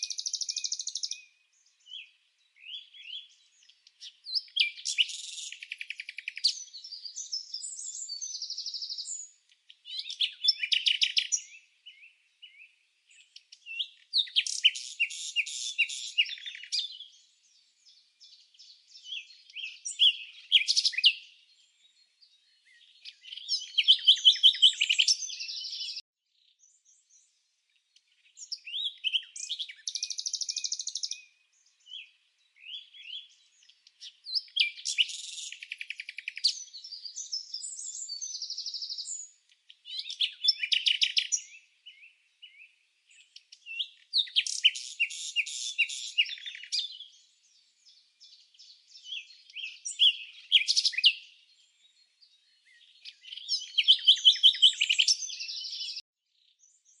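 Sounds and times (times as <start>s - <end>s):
songbird chirping and trilling: 0.0s - 57.0s.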